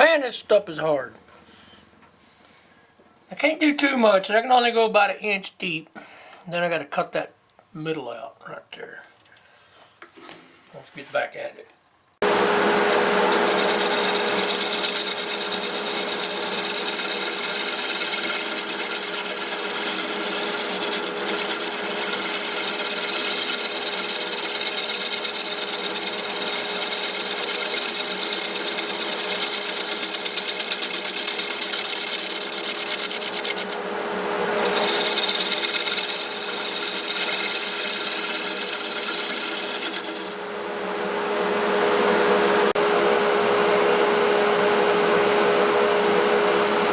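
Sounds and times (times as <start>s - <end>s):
wood lathe motor whine: 12.2s - 40.5s
turning tool scraping wood: 12.3s - 40.4s.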